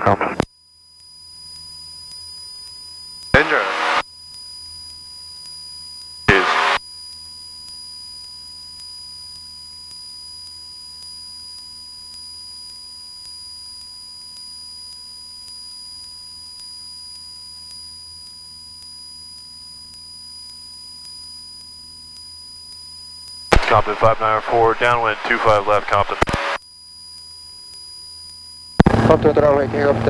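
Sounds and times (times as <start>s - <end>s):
thin electrical whine: 3.4s - 4.0s, 6.3s - 6.8s, 20.2s - 29.7s
light aircraft engine drone: 28.8s - 30.0s.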